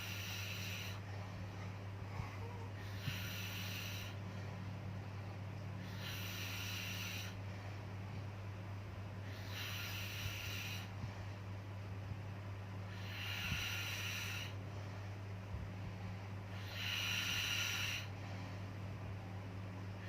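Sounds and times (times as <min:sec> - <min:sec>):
steady low hum: 0:00.0 - 0:20.0
slow even snoring: 0:02.8 - 0:04.2, 0:05.8 - 0:07.4, 0:09.3 - 0:10.9, 0:12.9 - 0:14.6, 0:16.6 - 0:18.1.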